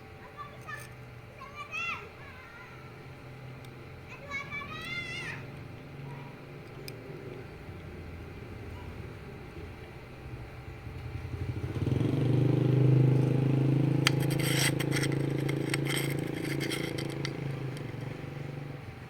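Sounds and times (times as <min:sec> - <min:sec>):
bit grinding with scratchy clicking: 0:10.9 - 0:19.0
rotary tool motor spinning: 0:13.1 - 0:18.7.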